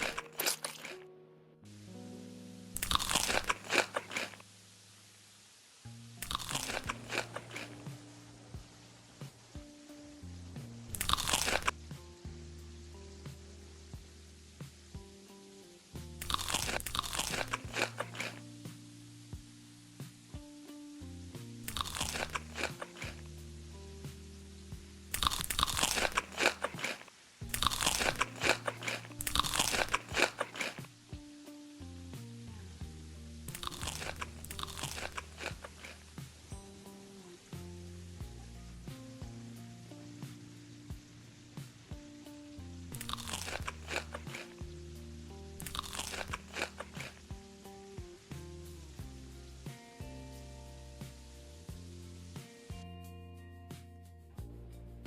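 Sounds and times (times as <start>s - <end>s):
crisp food crunching: 0.0s - 1.0s, 2.8s - 4.4s, 6.2s - 8.1s, 10.9s - 11.8s, 16.2s - 18.4s, 21.6s - 23.3s, 25.1s - 31.0s, 33.5s - 36.5s, 42.9s - 44.7s, 45.6s - 47.3s
soft background music: 0.0s - 55.0s.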